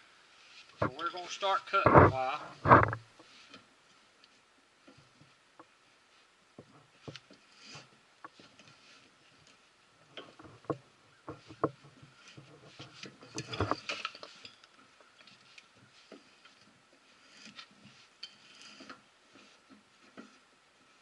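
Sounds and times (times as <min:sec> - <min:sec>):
metallic clicks and knocks: 0:13.0 - 0:15.4.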